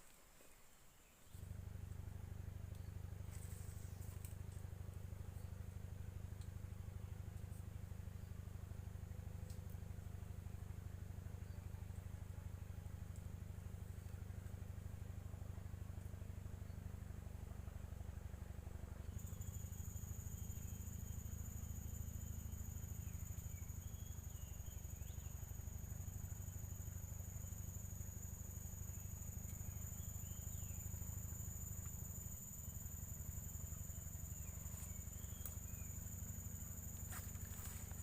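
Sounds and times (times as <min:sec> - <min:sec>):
insects trilling: 0:19.0 - 0:38.0.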